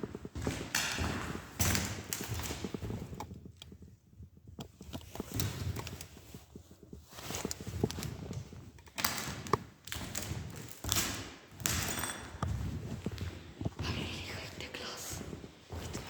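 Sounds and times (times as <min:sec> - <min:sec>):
footsteps and scuffs on debris: 0:09.6 - 0:16.0.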